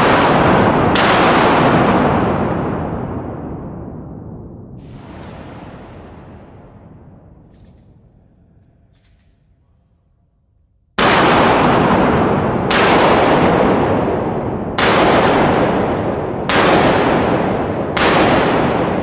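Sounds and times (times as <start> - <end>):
shotgun shots echoing: 0.0 - 4.1, 11.0 - 19.0.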